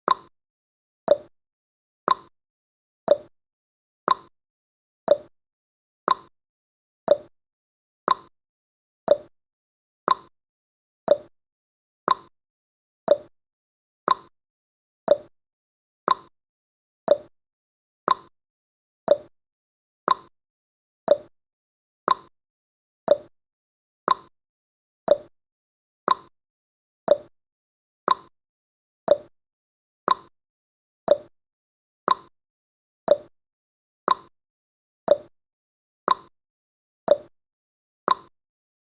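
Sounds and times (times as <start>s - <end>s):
timer ticking: 0.1s - 0.3s, 1.1s - 1.3s, 2.1s - 2.3s, 3.1s - 3.3s, 4.1s - 4.3s, 5.1s - 5.3s, 6.1s - 6.3s, 7.1s - 7.3s, 8.1s - 8.3s, 9.1s - 9.3s, 10.1s - 10.3s, 11.1s - 11.3s, 12.1s - 12.3s, 13.1s - 13.3s, 14.1s - 14.3s, 15.1s - 15.3s, 16.1s - 16.3s, 17.1s - 17.3s, 18.1s - 18.3s, 19.1s - 19.3s, 20.1s - 20.3s, 21.1s - 21.3s, 22.1s - 22.3s, 23.1s - 23.3s, 24.1s - 24.3s, 25.1s - 25.3s, 27.1s - 27.3s, 29.1s - 29.3s, 31.1s - 31.3s, 33.1s - 33.3s, 35.1s - 35.3s, 37.1s - 37.3s, 38.1s - 38.3s.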